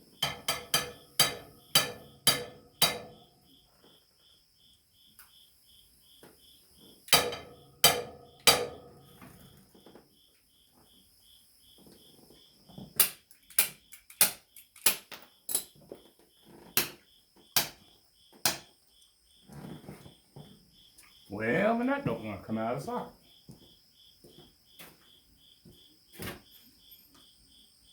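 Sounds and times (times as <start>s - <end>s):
crickets chirping: 0.0s - 27.9s
metal tool knocks and clinks: 0.2s - 3.2s.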